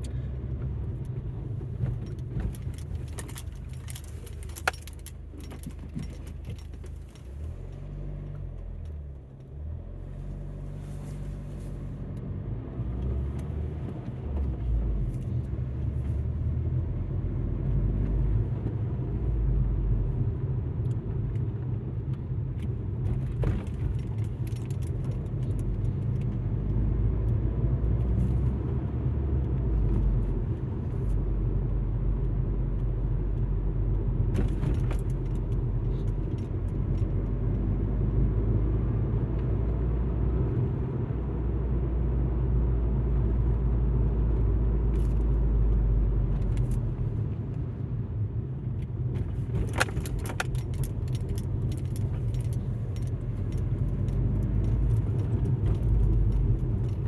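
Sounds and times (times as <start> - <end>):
engine and road rumble in car: 0.0 - 57.0
light rattles: 1.1 - 9.0, 49.2 - 57.0.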